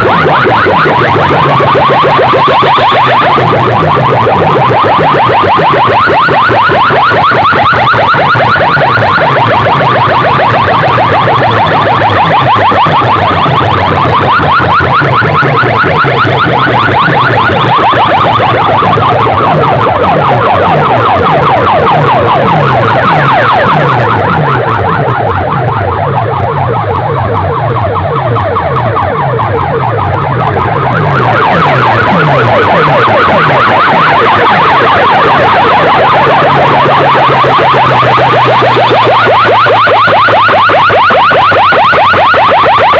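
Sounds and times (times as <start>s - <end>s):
warbling synth sweeps: 0.0s - 41.0s
loud electronic dance music: 0.0s - 42.9s
stepping bass pattern: 8.1s - 40.0s.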